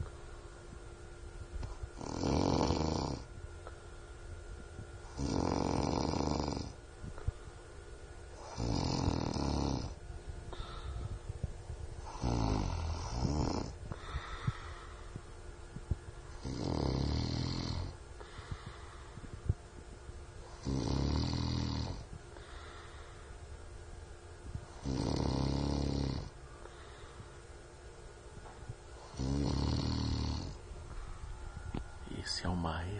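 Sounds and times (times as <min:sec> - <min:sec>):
man snoring: 0:02.0 - 0:03.3, 0:05.1 - 0:06.8, 0:08.4 - 0:10.0, 0:12.0 - 0:14.5, 0:16.4 - 0:18.0, 0:20.5 - 0:22.1, 0:24.8 - 0:26.4, 0:29.0 - 0:30.6.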